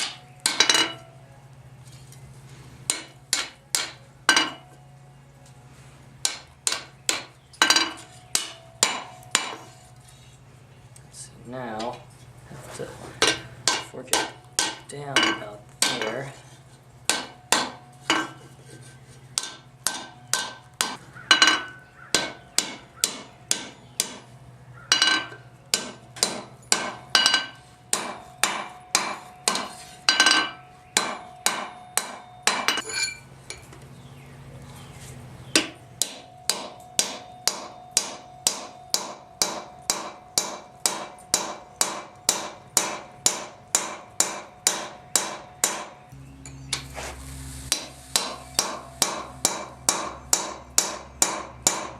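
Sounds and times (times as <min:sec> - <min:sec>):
hammer striking steel on anvil: 0:00.0 - 0:01.1, 0:02.9 - 0:04.8, 0:06.2 - 0:09.8, 0:13.2 - 0:16.5, 0:17.1 - 0:18.5, 0:19.4 - 0:24.3, 0:24.9 - 0:33.6, 0:35.5 - 0:46.9, 0:47.7 - 0:51.9.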